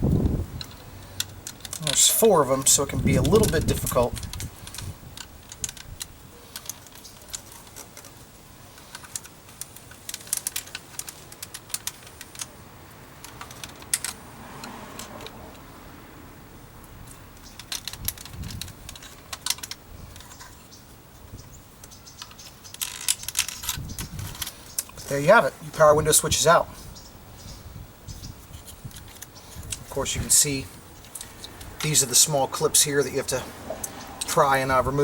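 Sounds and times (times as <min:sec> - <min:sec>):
plastic clicks and scrapes: 0:00.6 - 0:12.6, 0:13.2 - 0:15.4, 0:17.1 - 0:20.6, 0:21.8 - 0:25.1, 0:28.5 - 0:30.0.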